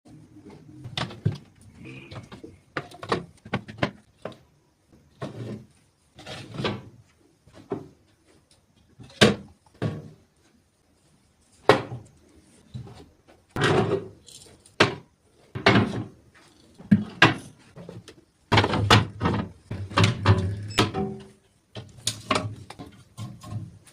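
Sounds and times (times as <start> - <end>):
drawers scraping: 5.2 - 7.8.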